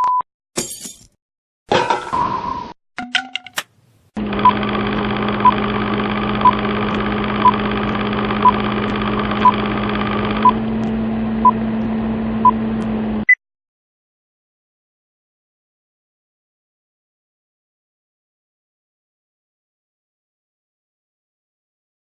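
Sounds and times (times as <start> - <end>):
machine-like hum: 4.2 - 13.3.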